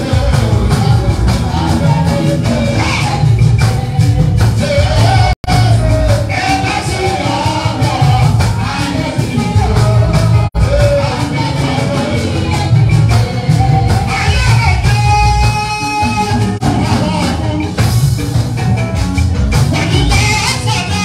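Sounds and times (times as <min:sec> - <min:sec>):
heavy bass line: 0:00.0 - 0:21.0
steady percussion beat: 0:00.0 - 0:21.0
person singing: 0:19.7 - 0:21.0.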